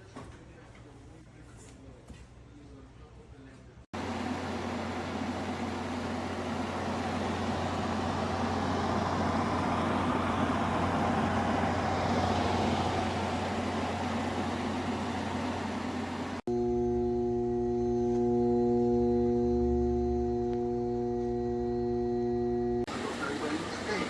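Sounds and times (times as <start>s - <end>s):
air conditioner fan rushing: 4.0s - 16.4s.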